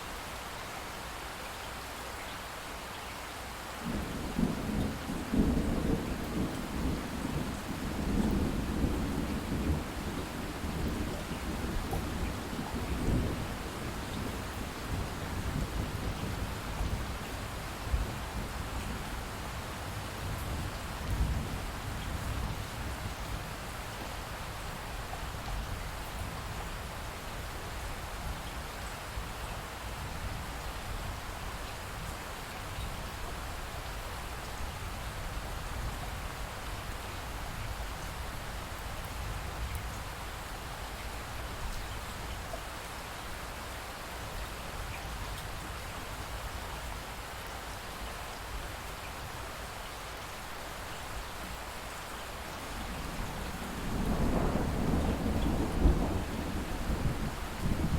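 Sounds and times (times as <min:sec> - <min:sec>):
steady rain falling: 0:00.0 - 0:57.9
thunder rumbling: 0:52.6 - 0:57.9.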